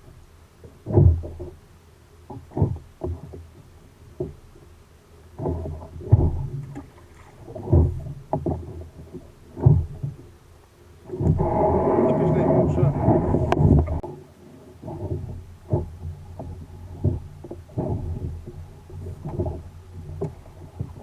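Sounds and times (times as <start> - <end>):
kayak paddle strokes: 0.0 - 21.0
knocks against kayak hull: 0.9 - 1.6, 2.3 - 3.4, 5.4 - 10.3.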